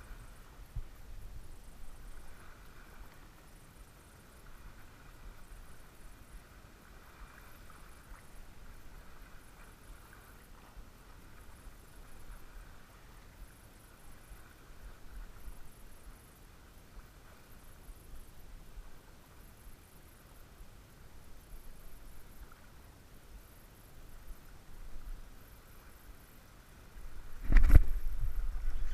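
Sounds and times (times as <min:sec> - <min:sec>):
wind rumble on microphone: 0:00.0 - 0:03.4, 0:14.1 - 0:16.2, 0:27.0 - 0:28.9
small waves lapping: 0:00.0 - 0:28.9.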